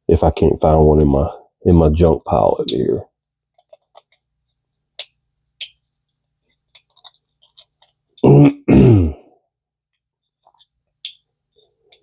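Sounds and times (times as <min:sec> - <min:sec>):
small reel parts clicking: 0:05.0 - 0:08.2, 0:09.8 - 0:12.0
man making wordless vocal sounds: 0:08.2 - 0:09.2.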